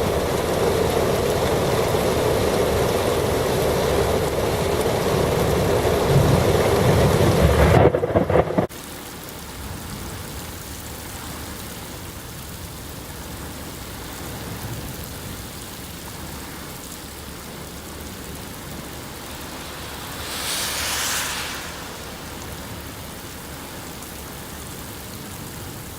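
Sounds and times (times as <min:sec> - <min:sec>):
heavy rain: 0:15.2 - 0:25.9
gusty wind: 0:17.1 - 0:24.4.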